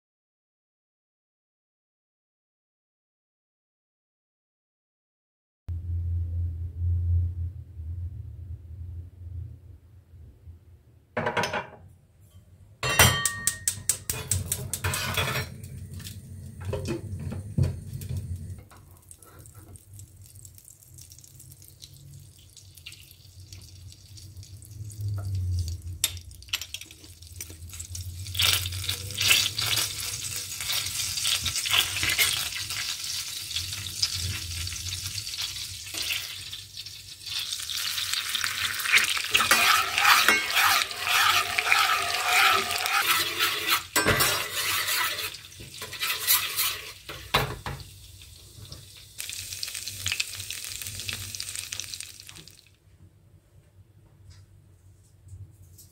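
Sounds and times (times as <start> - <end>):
utensils and dishes clinking: 12.8 - 15.7, 38.9 - 47.6
food sizzling: 14.0 - 52.8.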